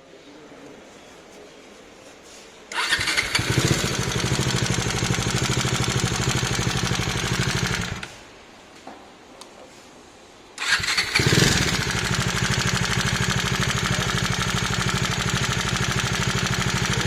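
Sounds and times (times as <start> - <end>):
motorcycle engine running: 2.8 - 8.1, 10.7 - 17.0.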